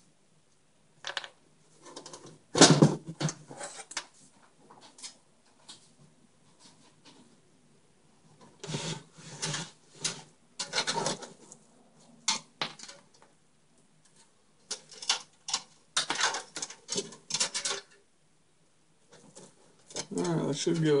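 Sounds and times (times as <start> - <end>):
objects knocking on a surface: 1.0 - 1.3.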